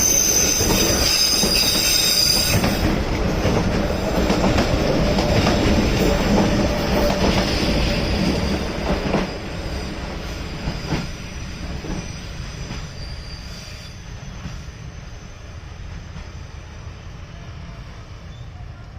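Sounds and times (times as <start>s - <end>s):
train wheels squealing on rails: 0.0s - 18.9s.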